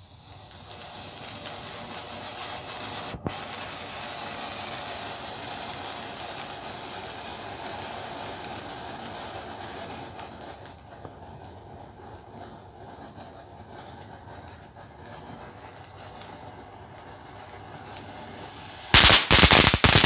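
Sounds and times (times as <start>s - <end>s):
firework fountain hissing: 0.0s - 20.0s
sharp firework pop: 18.4s - 20.0s.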